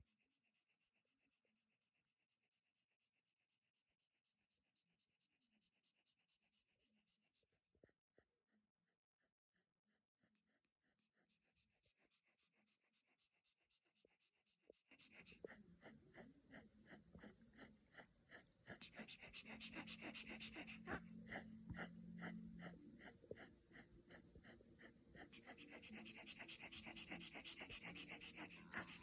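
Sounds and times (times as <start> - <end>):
puppy snoring faintly: 14.6 - 29.0.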